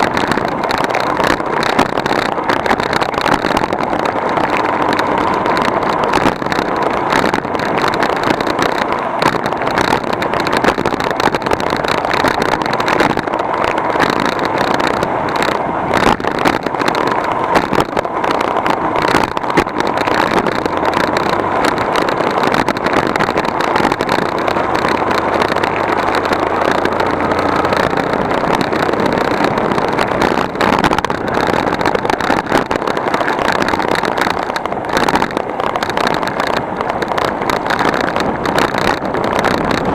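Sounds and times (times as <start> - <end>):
small knocks and rattles: 0.0 - 39.9
vehicle engine and road noise: 0.0 - 39.9.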